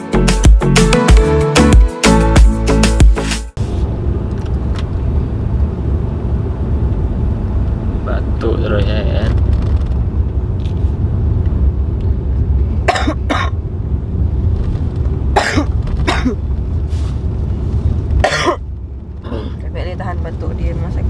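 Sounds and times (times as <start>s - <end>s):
steady low rumble: 3.6s - 21.0s
woman coughing: 12.9s - 13.6s, 15.4s - 16.4s, 18.2s - 18.6s, 19.3s - 19.6s.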